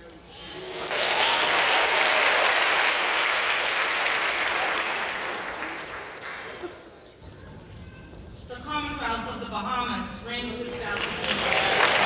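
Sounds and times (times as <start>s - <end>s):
audience applauding: 0.3s - 6.9s, 11.0s - 12.0s.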